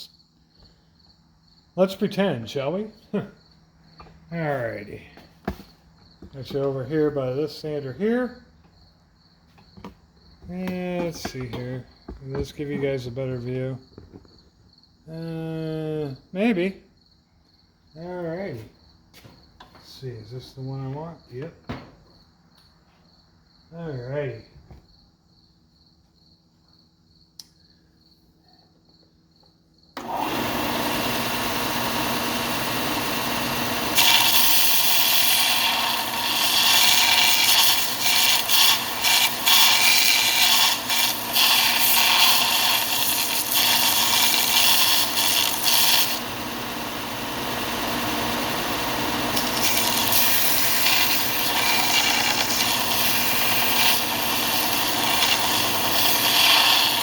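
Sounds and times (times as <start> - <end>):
belt sander running: 30.0 - 57.0
rough grinding on sander belt: 30.0 - 57.0.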